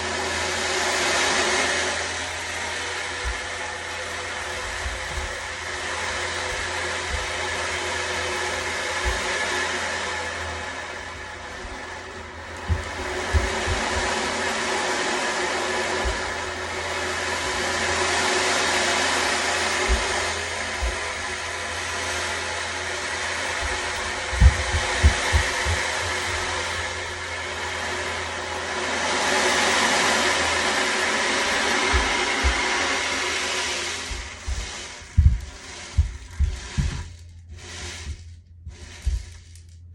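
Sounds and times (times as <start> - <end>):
ocean drum beads rolling: 0.9 - 39.8
dull low thumps of running: 3.1 - 9.9, 10.5 - 14.6, 16.0 - 17.8, 19.6 - 21.8, 23.4 - 27.2, 31.3 - 39.9.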